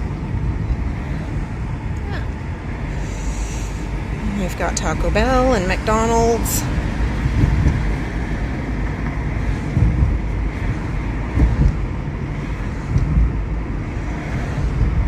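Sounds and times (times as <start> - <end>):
car driving rumble inside cabin: 0.0 - 15.0.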